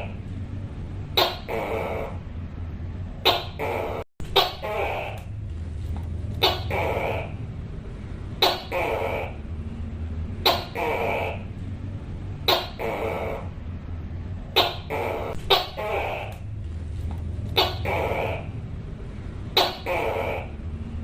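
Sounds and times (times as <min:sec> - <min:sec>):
steady low hum: 0:00.0 - 0:21.0
gecko calling: 0:01.1 - 0:02.2, 0:03.2 - 0:05.4, 0:06.4 - 0:07.5, 0:08.4 - 0:09.6, 0:10.4 - 0:11.6, 0:12.4 - 0:13.6, 0:14.5 - 0:16.6, 0:17.4 - 0:18.7, 0:19.5 - 0:20.7.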